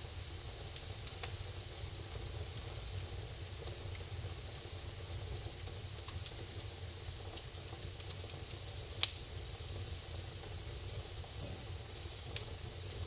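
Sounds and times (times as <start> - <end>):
wood fire crackling: 0.0 - 13.0
sharp pop from fire: 9.0 - 9.2, 11.4 - 13.0.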